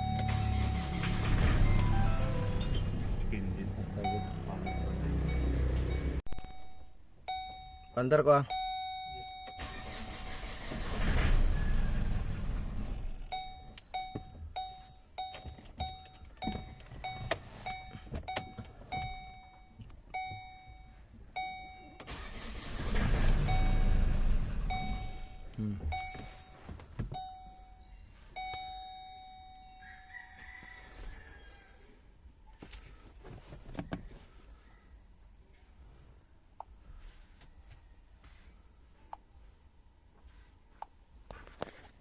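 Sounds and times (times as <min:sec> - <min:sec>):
engine cranking on starter: 0:00.0 - 0:02.7, 0:09.6 - 0:13.1, 0:22.0 - 0:25.4
dashboard warning chime beeping: 0:00.0 - 0:11.0, 0:13.2 - 0:30.6.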